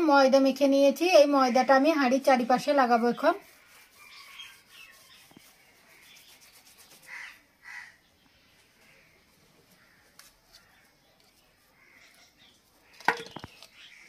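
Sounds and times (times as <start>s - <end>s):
faint rubbing of dough: 1.8s - 7.8s, 8.6s - 12.9s
crow cawing: 7.1s - 8.0s, 11.8s - 12.2s.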